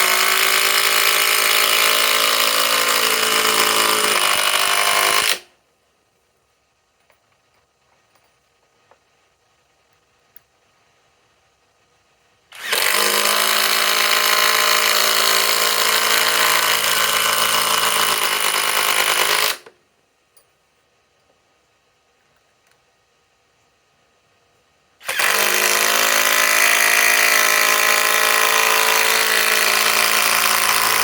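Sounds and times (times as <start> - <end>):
impact driver hammering screw into wood: 0.0 - 5.5, 12.6 - 19.7, 25.0 - 31.0.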